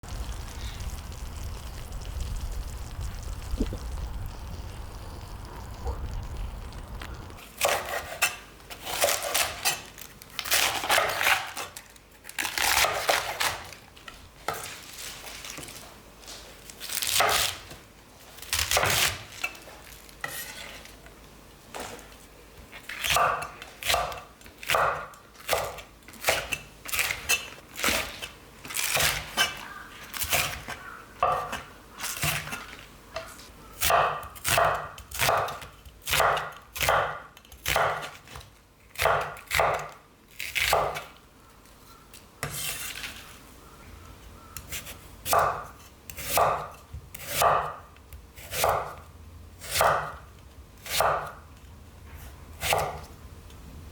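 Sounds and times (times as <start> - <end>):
food sizzling: 0.0 - 7.4
low rumble: 0.0 - 7.4.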